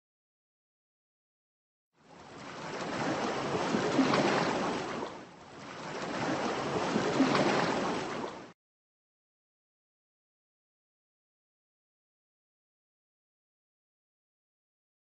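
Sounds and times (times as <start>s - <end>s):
sea waves washing onto shore: 2.1s - 8.5s.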